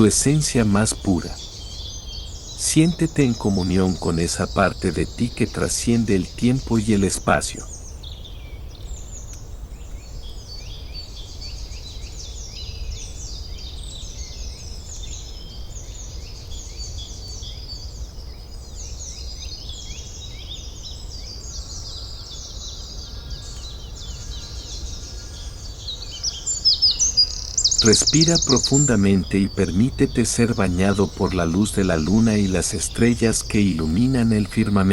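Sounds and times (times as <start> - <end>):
small birds chirping and twittering: 0.0 - 34.9.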